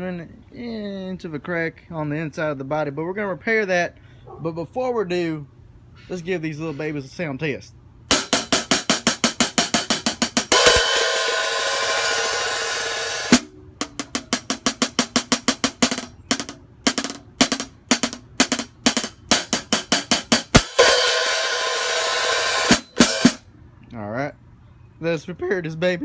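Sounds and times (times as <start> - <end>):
closed hi-hat strokes: 8.1 - 23.4
open hi-hat ringing: 8.1 - 23.4.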